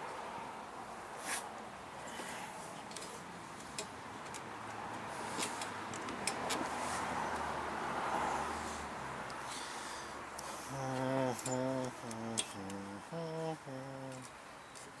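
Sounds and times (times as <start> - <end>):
vehicle passing: 3.4 - 13.0
metallic clicks from hand tools: 11.4 - 12.8.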